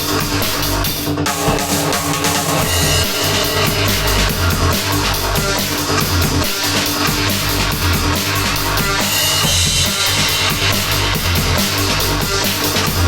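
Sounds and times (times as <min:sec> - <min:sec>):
loud rock music: 0:00.0 - 0:13.0.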